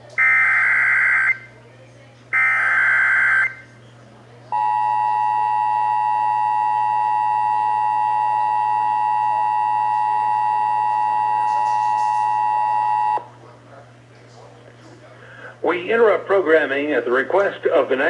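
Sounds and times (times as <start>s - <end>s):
two-tone alarm signal: 0.2s - 1.6s, 2.3s - 3.7s, 4.5s - 13.2s.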